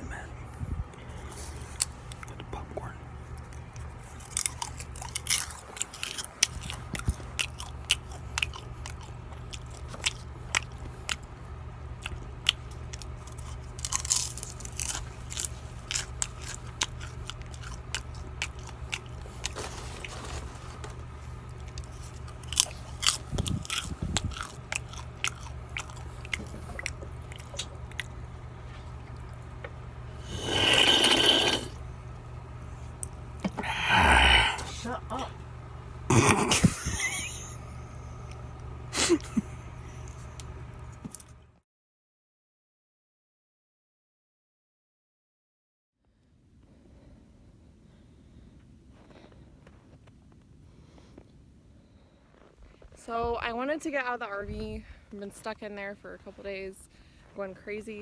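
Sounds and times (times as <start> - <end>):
person crunching popcorn: 0.9 - 2.6, 3.3 - 29.5, 30.2 - 31.8, 33.0 - 35.0, 36.1 - 37.5
breathy rush: 30.2 - 31.8, 33.5 - 34.9.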